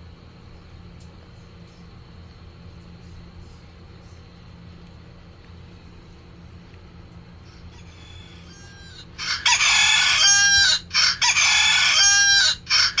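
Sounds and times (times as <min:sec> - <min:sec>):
rooster crow alarm through speaker: 0:07.5 - 0:13.0.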